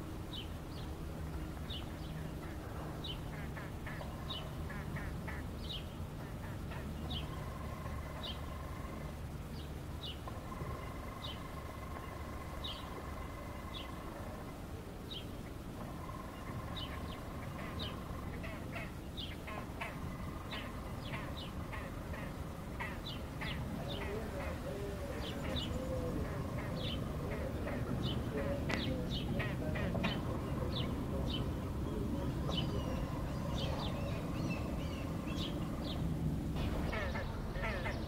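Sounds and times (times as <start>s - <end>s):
low hum of urban noise: 0.0s - 38.0s
waterfowl calling: 2.3s - 9.2s, 10.3s - 14.6s, 15.8s - 36.0s, 36.6s - 38.0s.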